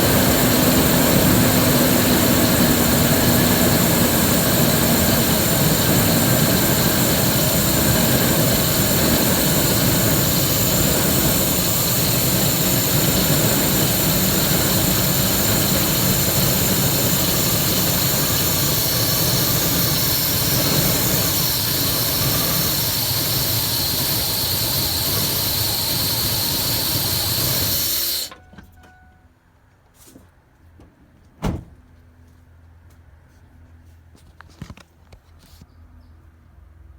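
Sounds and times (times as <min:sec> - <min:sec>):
loud hissing: 0:00.0 - 0:28.3
truck engine idling roughly: 0:00.0 - 0:28.3.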